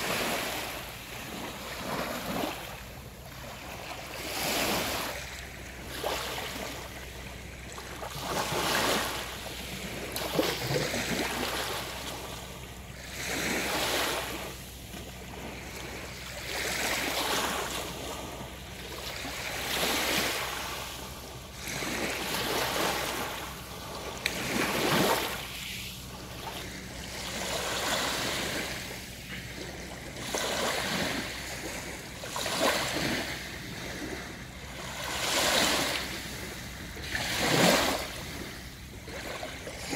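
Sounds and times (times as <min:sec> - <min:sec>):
small waves breaking on shore: 0:00.0 - 0:39.9.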